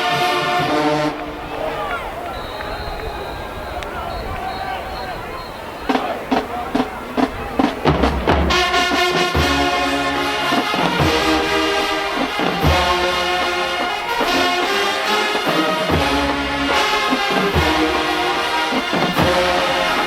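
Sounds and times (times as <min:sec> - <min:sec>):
brass chords: 0:00.0 - 0:20.0
marching band playing: 0:00.0 - 0:20.0
drum strikes: 0:05.9 - 0:20.0.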